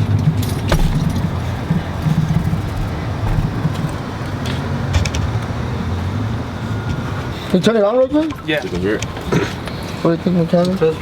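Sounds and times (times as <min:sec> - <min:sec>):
vehicle engine idling: 0:00.0 - 0:07.8.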